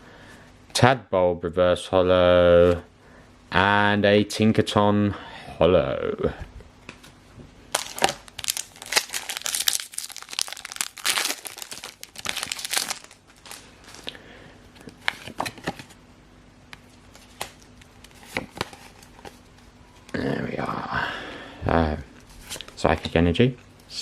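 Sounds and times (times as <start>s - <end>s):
foil wrapper tearing and crinkling: 7.7s - 14.1s.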